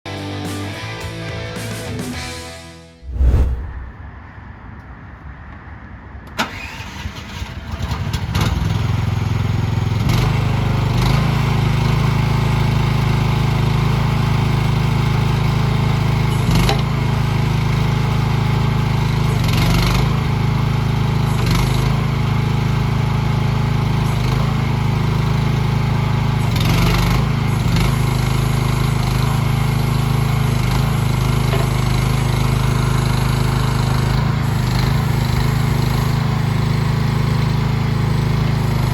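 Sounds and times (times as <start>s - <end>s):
excavator engine starting and running: 21.3s - 38.9s.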